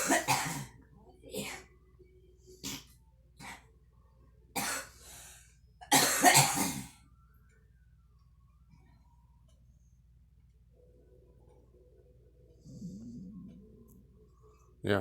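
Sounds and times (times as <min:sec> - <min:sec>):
girl coughing: 0:00.0 - 0:01.7, 0:04.6 - 0:05.0, 0:05.8 - 0:06.9.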